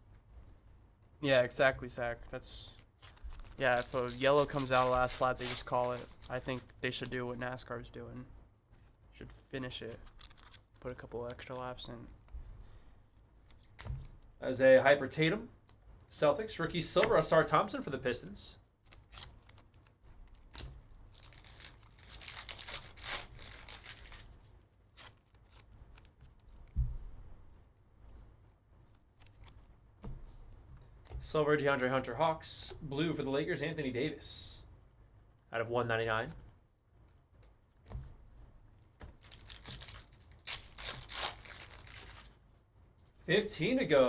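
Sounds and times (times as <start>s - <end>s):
wrapper tearing and crinkling: 3.0s - 6.7s, 10.0s - 11.6s, 18.9s - 26.2s, 39.2s - 42.4s
dull thump: 26.8s - 27.2s.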